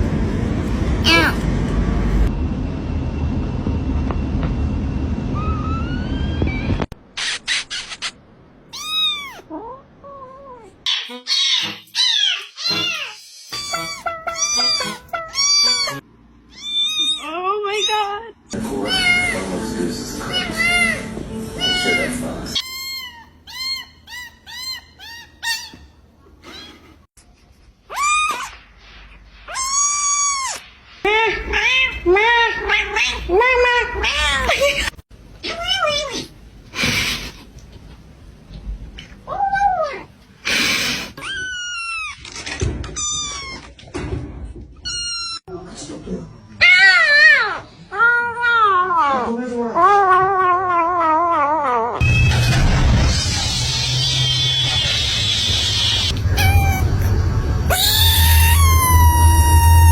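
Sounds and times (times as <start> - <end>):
low rumbling noise: 0.0 - 6.9, 52.0 - 59.9
kitten mewing: 8.7 - 10.7, 56.1 - 59.9
kitten meowing: 8.7 - 18.0, 56.1 - 59.9.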